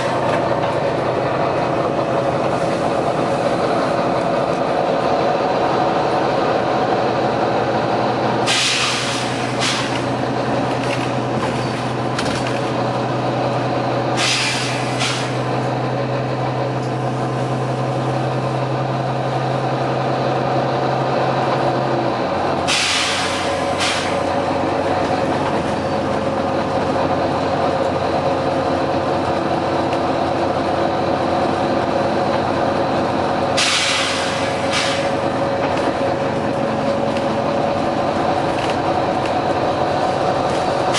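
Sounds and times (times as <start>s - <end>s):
bus diesel engine drone: 0.0s - 40.9s
compressed air hisses: 8.5s - 9.9s, 14.2s - 15.4s, 22.7s - 24.2s, 33.6s - 35.2s.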